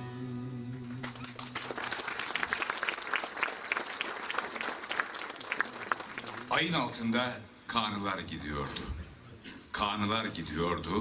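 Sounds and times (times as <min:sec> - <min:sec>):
audience applauding: 0:00.8 - 0:06.8.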